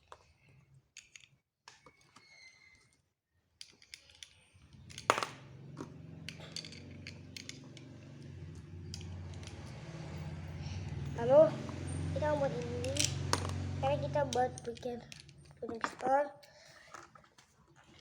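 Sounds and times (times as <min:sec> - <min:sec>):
plastic bricks clicking: 0:03.6 - 0:05.4, 0:06.2 - 0:08.0.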